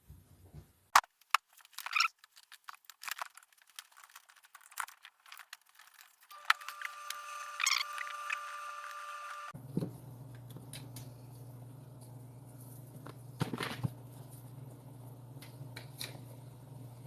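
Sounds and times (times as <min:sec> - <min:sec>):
faint steady hum: 0:06.3 - 0:17.0.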